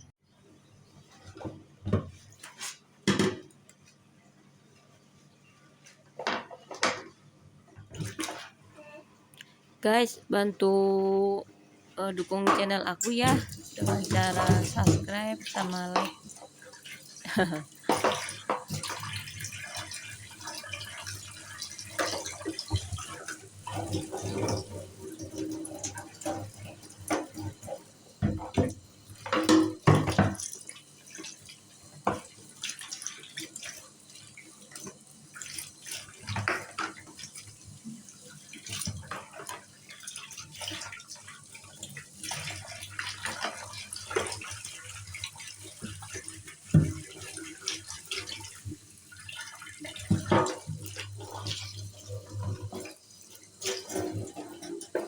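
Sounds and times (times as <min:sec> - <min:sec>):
water running from tap into sink: 0:13.0 - 0:55.0.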